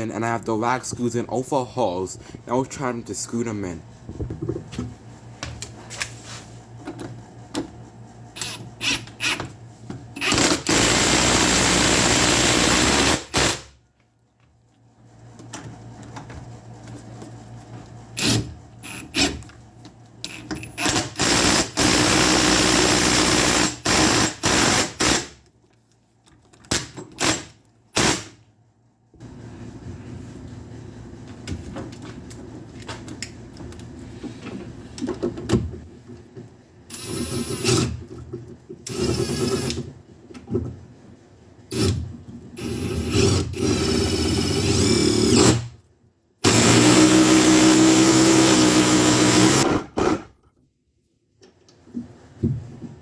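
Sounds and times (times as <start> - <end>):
impact driver hammering screws: 10.2 - 13.6, 20.3 - 25.3, 46.4 - 50.3.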